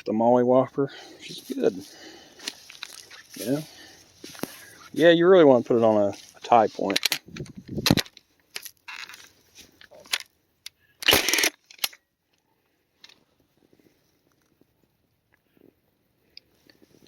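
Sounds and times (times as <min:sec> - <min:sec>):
fence stapler firing: 0:11.0 - 0:12.0.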